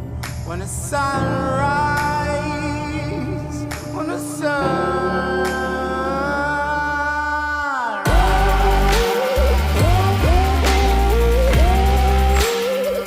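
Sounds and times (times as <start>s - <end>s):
person singing long notes: 0.5s - 13.0s
heavy bass music: 8.1s - 13.0s.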